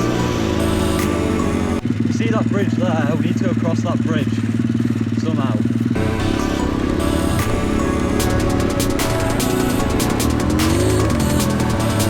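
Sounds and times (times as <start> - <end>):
electronic music with beat: 0.0 - 1.8, 5.9 - 12.0.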